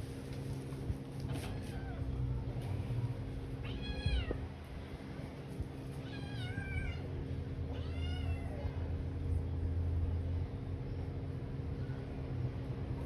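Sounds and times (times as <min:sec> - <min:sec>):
low steady hum: 0:00.0 - 0:13.0
cat meowing: 0:03.6 - 0:04.4, 0:06.0 - 0:07.1, 0:07.7 - 0:08.6.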